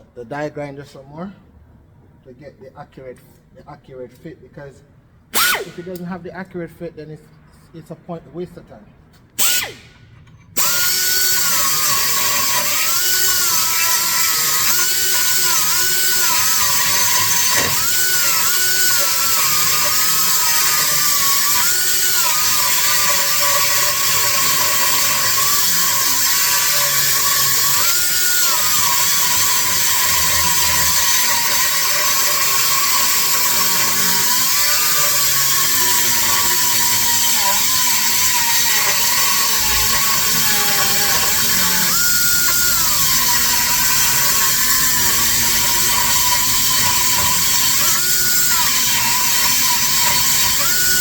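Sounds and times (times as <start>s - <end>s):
die grinder grinding metal: 10.6s - 51.0s.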